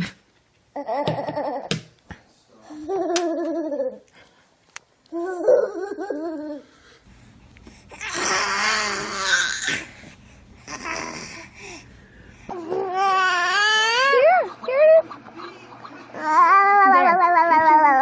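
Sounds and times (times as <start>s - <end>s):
baby babbling and crying: 8.0s - 9.9s, 10.7s - 11.5s, 12.5s - 14.2s, 16.2s - 18.0s.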